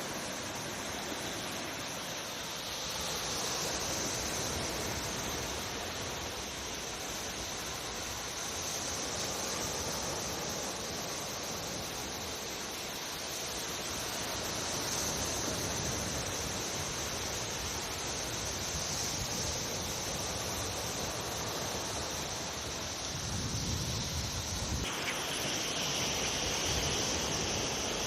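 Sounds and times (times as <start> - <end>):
sea surf: 0.0 - 28.0
wind: 0.0 - 28.0
wind rumble on microphone: 18.3 - 24.9.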